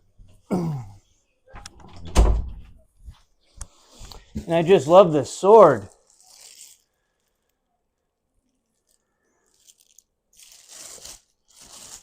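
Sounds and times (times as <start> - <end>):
plastic packaging crinkling: 3.9 - 7.7, 8.4 - 12.0.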